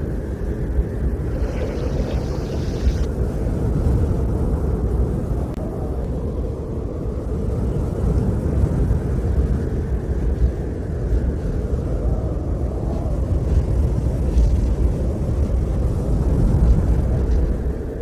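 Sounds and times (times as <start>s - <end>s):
low outdoor rumble: 0.0s - 18.0s.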